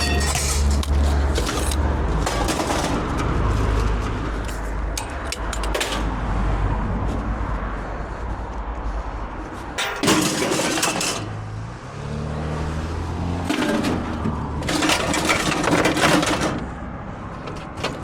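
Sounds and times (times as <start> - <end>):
vehicle engine rumbling: 0.0 - 18.0
metallic clinks and knocks: 9.8 - 11.3.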